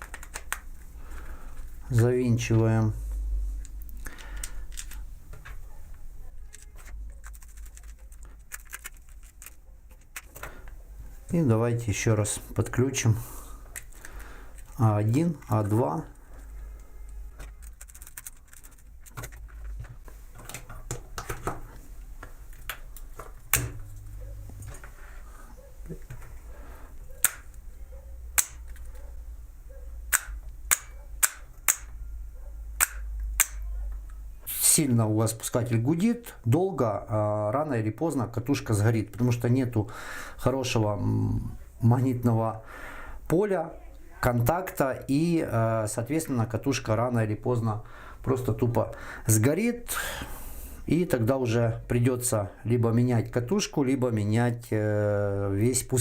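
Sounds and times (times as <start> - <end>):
screwdriver clicking on screws: 28.4 - 28.9, 30.1 - 31.9, 32.8 - 33.6.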